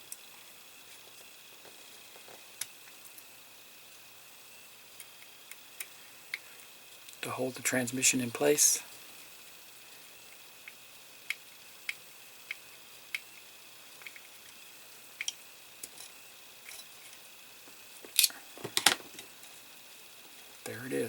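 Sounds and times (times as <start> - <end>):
metal parts knocking and clattering: 18.2 - 19.2.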